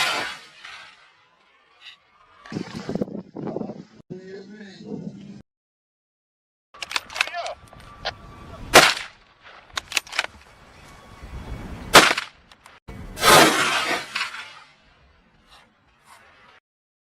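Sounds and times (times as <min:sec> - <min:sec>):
sharp gunshots: 0:08.7 - 0:09.7, 0:11.9 - 0:12.4, 0:13.2 - 0:14.5
loud noisy blast: 0:13.1 - 0:14.6.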